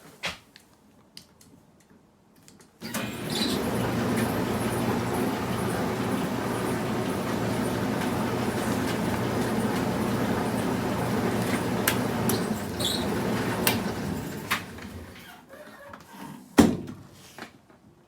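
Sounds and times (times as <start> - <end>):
clothes dryer humming: 2.8 - 15.5.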